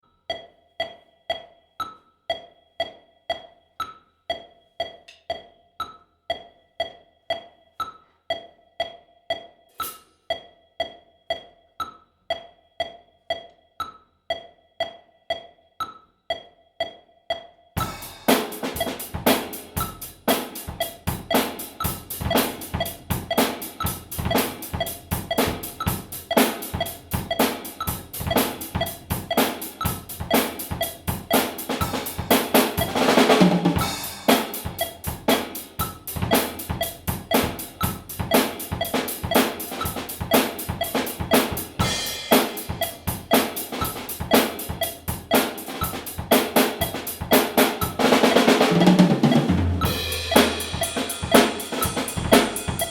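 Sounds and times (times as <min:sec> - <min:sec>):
drum kit solo: 0:17.8 - 0:52.9.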